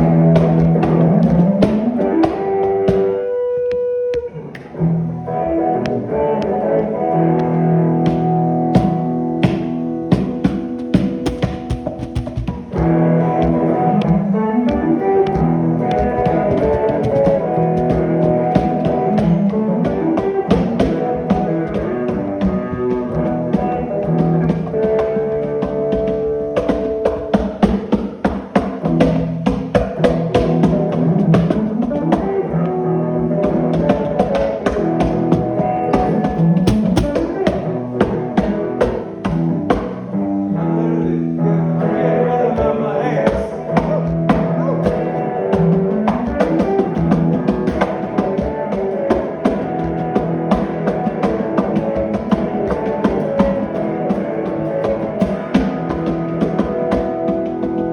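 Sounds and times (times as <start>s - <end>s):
steady drum beat: 0.0s - 3.3s, 7.9s - 32.4s, 33.4s - 40.1s, 43.3s - 57.9s
guitar: 0.0s - 57.9s.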